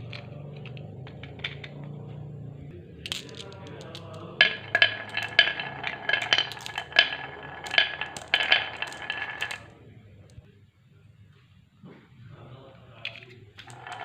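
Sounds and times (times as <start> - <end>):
marbles clattering down wooden run: 3.1 - 9.8, 13.6 - 14.0.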